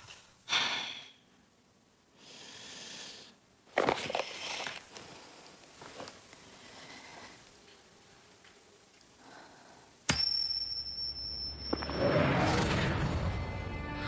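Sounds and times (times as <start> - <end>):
coin flicked metallic ring: 10.1 - 12.0.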